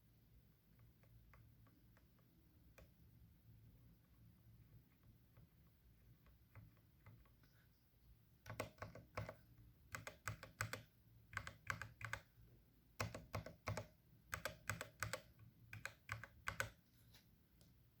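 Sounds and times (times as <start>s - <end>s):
mechanical keyboard key presses: 8.5s - 12.3s, 13.0s - 16.8s.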